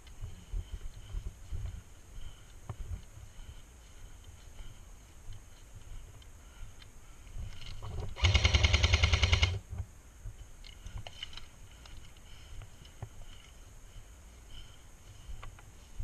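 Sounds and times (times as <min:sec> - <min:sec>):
airsoft rifle full-auto burst: 0:08.2 - 0:09.6.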